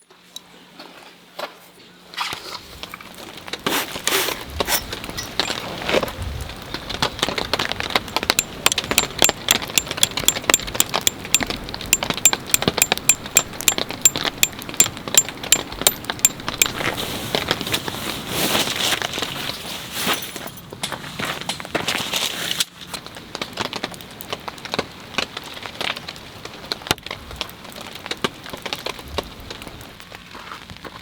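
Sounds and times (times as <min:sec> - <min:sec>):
small sharp metallic clicks: 0:08.3 - 0:16.8.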